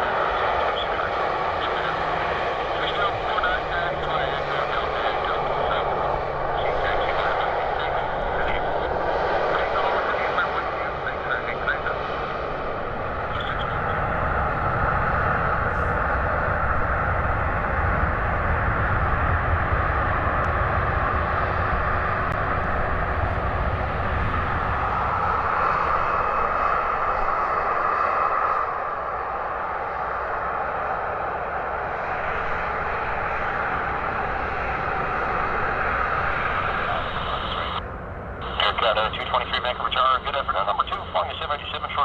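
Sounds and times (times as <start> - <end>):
jet engines rumbling: 0.0 - 42.0.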